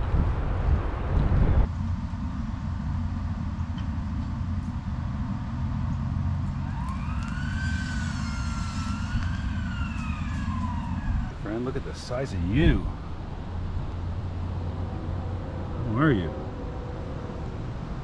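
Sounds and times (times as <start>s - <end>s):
wind rumble on microphone: 0.0s - 18.0s
distant siren wailing: 5.4s - 18.0s.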